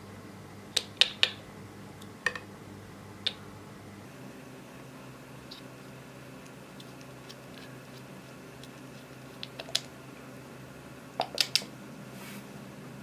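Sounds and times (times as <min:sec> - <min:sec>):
faint hiss: 0:12.0 - 0:13.0.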